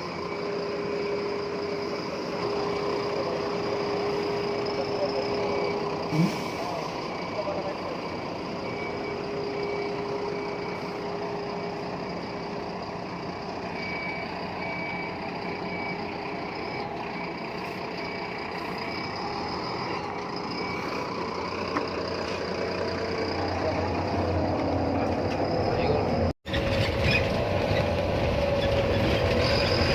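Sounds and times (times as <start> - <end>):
high electronic beep: 0.0 - 12.6, 13.6 - 21.6
bus engine and road noise: 0.0 - 29.9.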